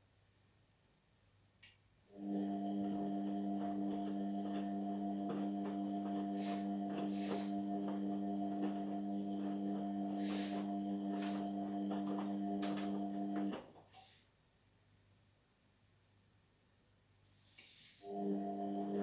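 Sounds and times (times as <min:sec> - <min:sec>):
washing machine electrical hum: 0:02.1 - 0:14.0, 0:17.6 - 0:19.0.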